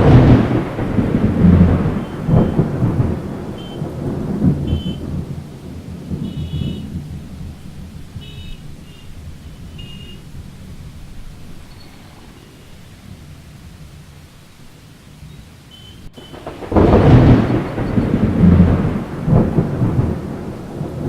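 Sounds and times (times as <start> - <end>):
thunderclap rumbling: 0.0 - 14.5, 16.0 - 21.0
steady rain: 0.0 - 21.0.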